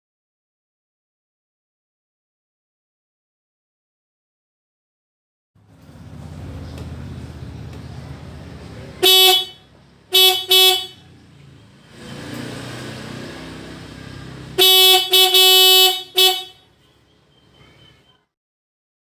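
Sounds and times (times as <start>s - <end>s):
motorcycle horn honking: 9.0s - 11.2s, 14.4s - 16.9s.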